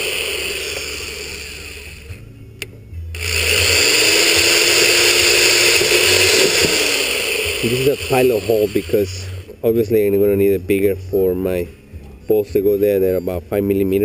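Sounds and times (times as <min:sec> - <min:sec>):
electric drill running: 0:00.0 - 0:02.2, 0:03.1 - 0:09.5.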